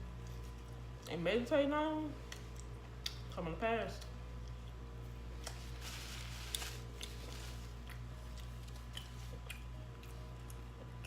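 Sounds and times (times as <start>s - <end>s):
person chewing food: 6.4s - 11.0s.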